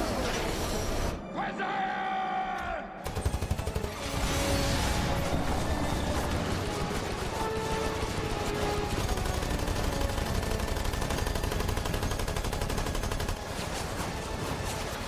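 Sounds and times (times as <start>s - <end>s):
music: 0.0s - 15.0s
automatic gunfire: 3.0s - 4.4s, 5.4s - 14.1s.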